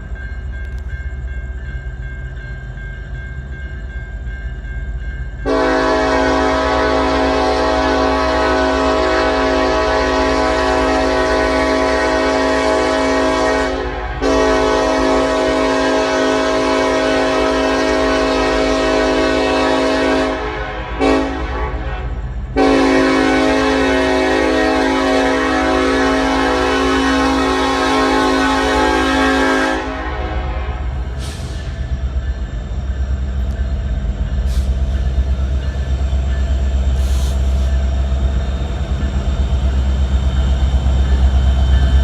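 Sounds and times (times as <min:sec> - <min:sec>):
low rumble of train: 0:00.0 - 0:42.0
train air horn blasts: 0:05.4 - 0:31.8, 0:34.4 - 0:35.2, 0:36.9 - 0:37.8.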